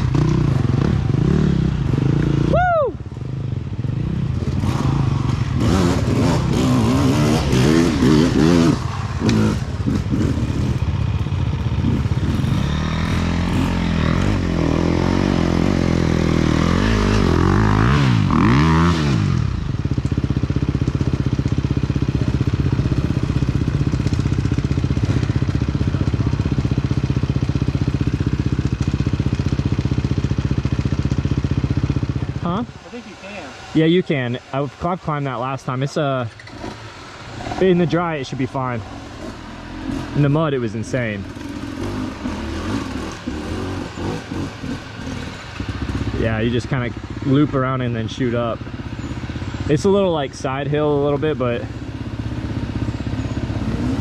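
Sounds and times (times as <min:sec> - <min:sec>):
dirt bike engine revving: 0:00.0 - 0:54.0
engine clatter: 0:03.8 - 0:33.1.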